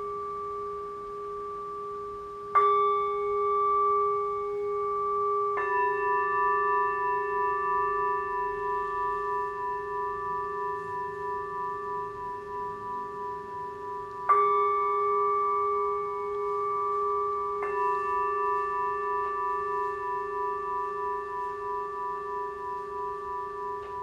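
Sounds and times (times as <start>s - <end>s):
singing bowl struck: 0.0s - 24.0s
singing bowls ringing: 0.0s - 24.0s.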